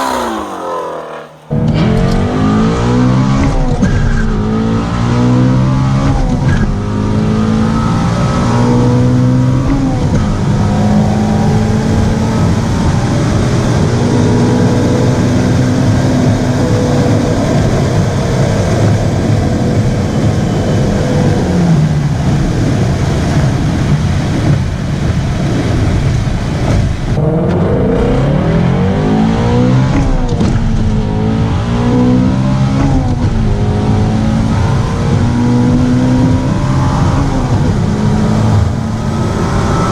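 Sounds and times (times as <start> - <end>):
car engine at high revs: 0.0 - 39.9.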